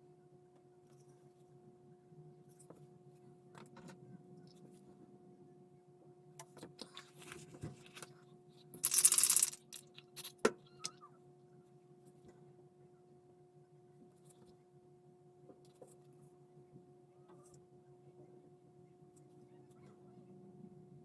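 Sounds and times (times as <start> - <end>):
clicks and rustles of handling: 6.4 - 11.0.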